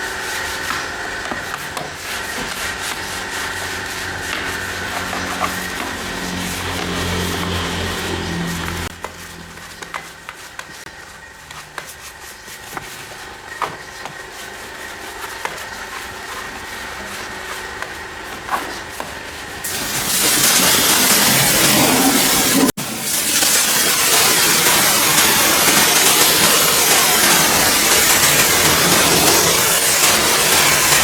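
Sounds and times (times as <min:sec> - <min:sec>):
machine hum: 0:00.0 - 0:10.2, 0:19.0 - 0:31.0
pressure washer spraying: 0:00.0 - 0:31.0.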